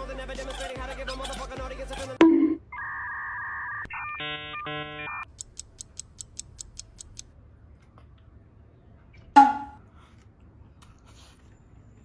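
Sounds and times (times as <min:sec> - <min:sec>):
synthetic beeping tones: 0:02.2 - 0:05.3, 0:09.4 - 0:09.8
quick light ticks: 0:05.2 - 0:07.3.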